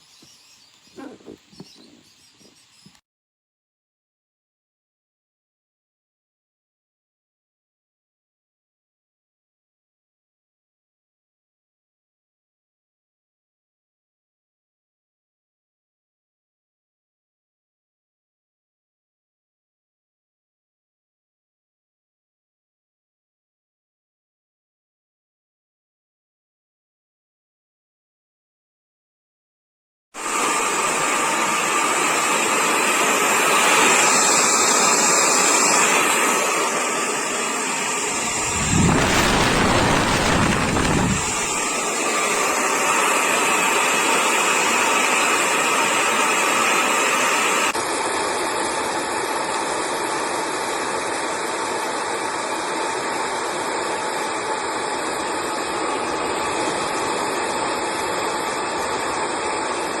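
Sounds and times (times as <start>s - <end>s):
hair dryer blowing: 30.2s - 44.4s.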